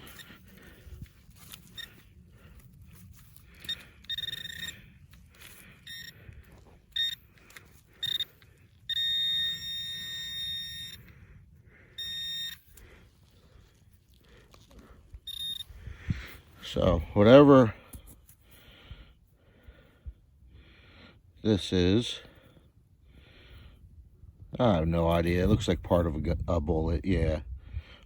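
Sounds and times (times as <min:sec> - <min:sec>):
metal detector probe beeping: 0:00.0 - 0:11.2, 0:11.8 - 0:13.1, 0:15.2 - 0:15.8
soil scraping: 0:00.0 - 0:11.2.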